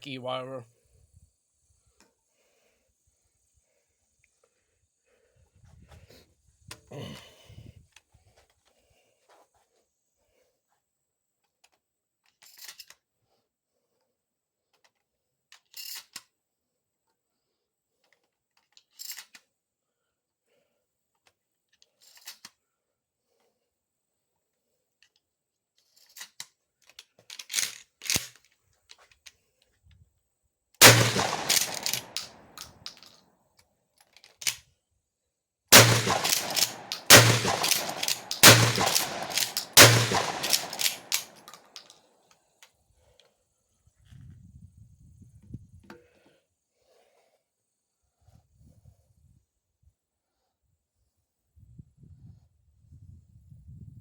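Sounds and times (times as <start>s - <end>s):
gun handling clicks: 27.4s - 28.3s, 30.8s - 33.0s, 35.7s - 41.6s
shotgun shots with ringing tail: 30.8s - 32.4s, 35.7s - 41.4s.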